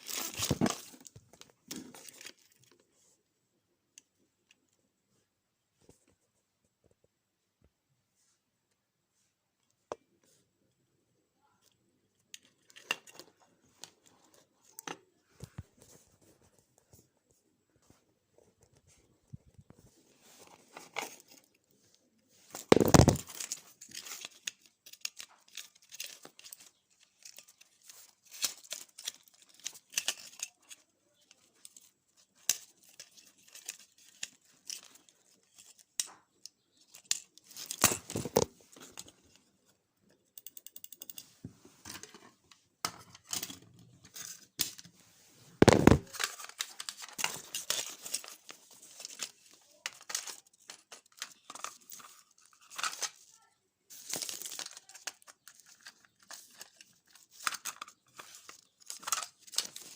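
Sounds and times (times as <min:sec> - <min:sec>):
crinkling handling noise: 0:00.0 - 0:03.2, 0:11.6 - 0:40.3, 0:41.0 - 0:59.9.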